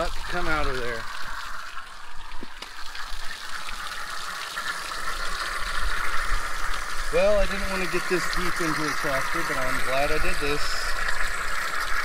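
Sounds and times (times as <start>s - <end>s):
hose water hissing: 0.0s - 12.0s.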